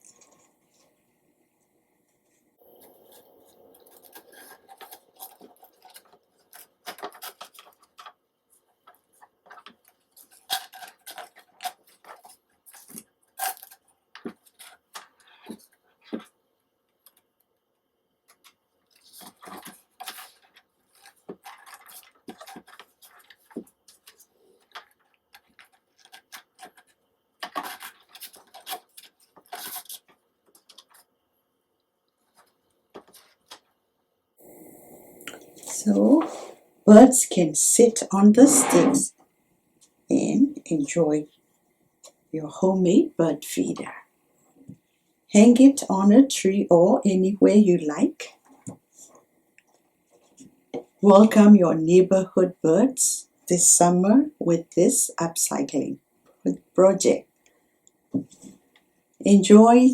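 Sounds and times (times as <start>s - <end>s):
rustling scrapes: 0.0s - 1.0s, 37.3s - 39.2s
small clicks and scratches: 0.0s - 1.0s, 1.6s - 17.5s, 18.2s - 31.2s, 32.1s - 33.8s.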